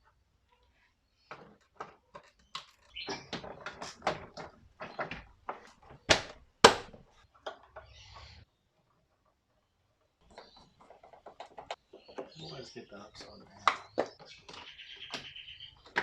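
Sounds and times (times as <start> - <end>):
loud sharp knocks: 6.0 - 7.0.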